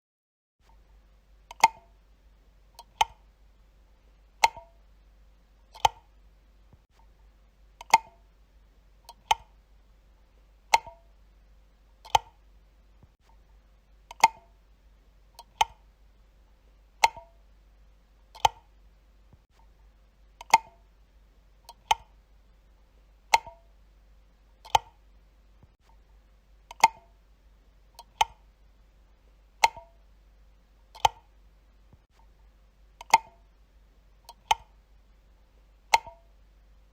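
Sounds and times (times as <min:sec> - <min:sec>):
faint low hum: 0:00.6 - 0:36.9
light switch clicking: 0:35.9 - 0:36.2.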